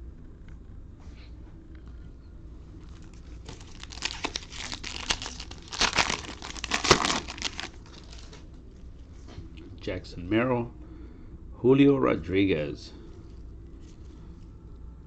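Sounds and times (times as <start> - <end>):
foil wrapper tearing and crinkling: 2.9 - 8.4.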